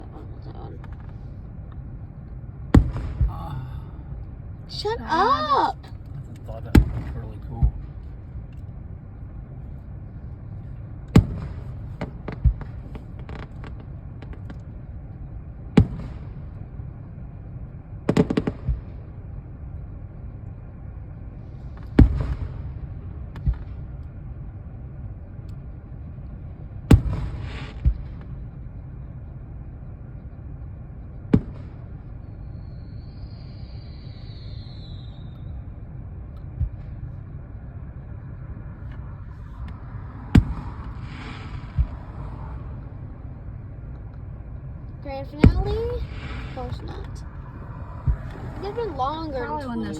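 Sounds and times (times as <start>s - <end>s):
low rumble: 0.0s - 49.9s
fireworks bangs: 2.8s - 3.4s, 39.4s - 43.0s, 45.3s - 49.9s
faint high whistle: 32.3s - 35.7s
fireworks crackling: 40.4s - 42.8s, 45.3s - 47.3s, 48.1s - 49.8s.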